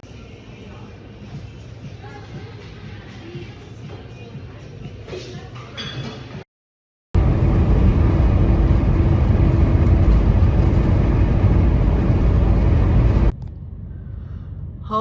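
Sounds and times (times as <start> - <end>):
vehicle road and engine noise: 7.2 - 14.8.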